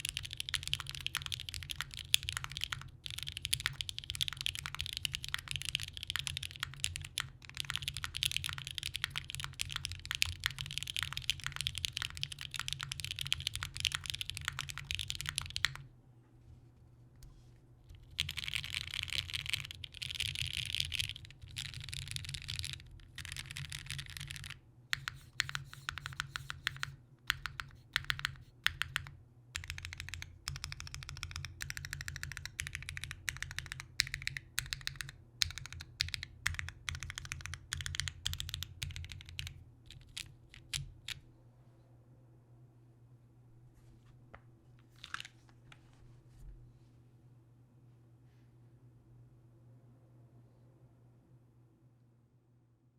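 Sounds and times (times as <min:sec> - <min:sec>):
mechanical keyboard clatter: 0:00.0 - 0:15.8, 0:18.0 - 0:40.9.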